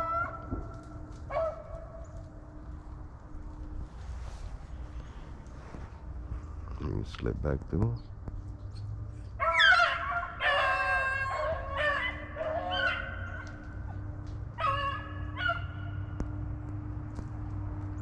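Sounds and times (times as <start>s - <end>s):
hounds baying: 0.0s - 2.4s, 9.2s - 16.2s
steady low hum: 0.0s - 18.0s.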